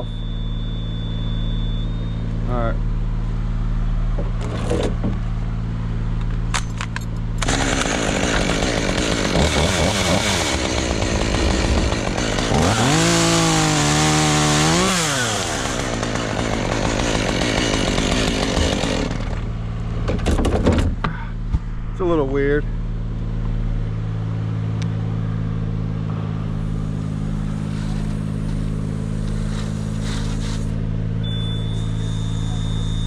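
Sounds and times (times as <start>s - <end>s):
low engine hum: 0.0s - 7.6s, 19.0s - 33.0s
chainsaw revving: 7.4s - 19.5s.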